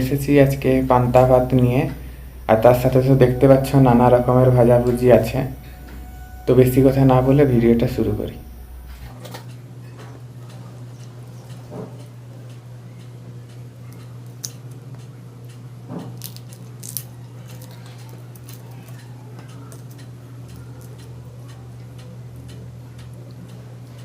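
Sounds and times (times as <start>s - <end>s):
steady low hum: 0.0s - 14.2s
bites of fried food: 16.1s - 19.1s.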